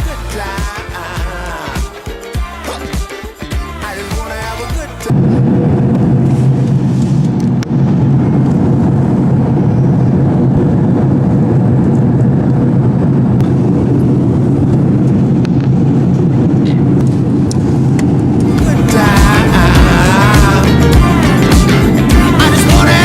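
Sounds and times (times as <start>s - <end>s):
bass-heavy music: 0.0s - 5.2s, 18.5s - 23.0s.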